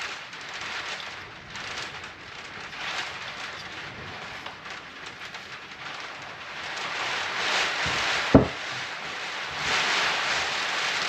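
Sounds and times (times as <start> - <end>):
rain hiss: 0.0 - 11.0
sharp dull knock: 8.4 - 8.6.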